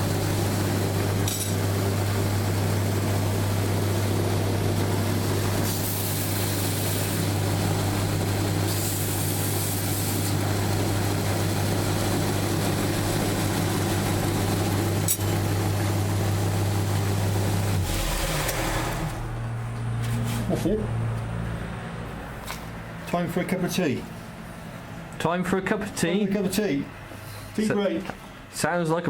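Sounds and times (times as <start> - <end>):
belt grinder running: 0.0 - 19.5.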